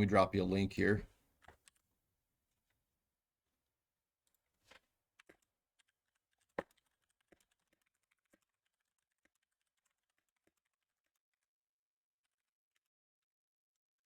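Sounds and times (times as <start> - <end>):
faint keyboard typing: 5.2 - 11.4.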